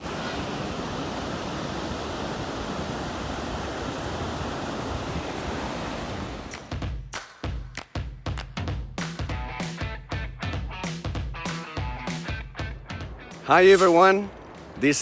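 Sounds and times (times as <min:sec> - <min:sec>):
surf rushing: 0:00.0 - 0:06.8, 0:13.0 - 0:15.0
wind: 0:00.0 - 0:07.0, 0:10.9 - 0:15.0
music with drum hits: 0:06.5 - 0:13.9.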